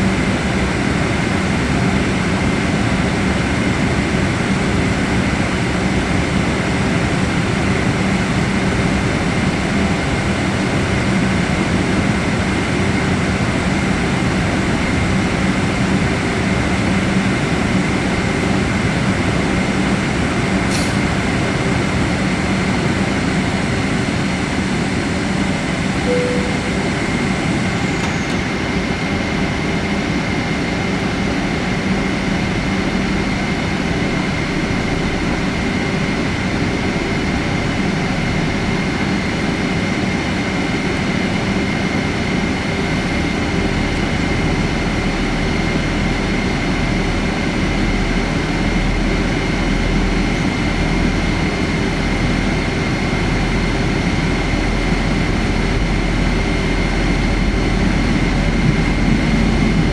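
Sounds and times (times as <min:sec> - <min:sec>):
jet cabin engine and air rush: 0:00.0 - 0:49.4, 0:50.1 - 0:59.9
constant low hum: 0:21.3 - 0:59.9
thin high tone: 0:26.1 - 0:28.4.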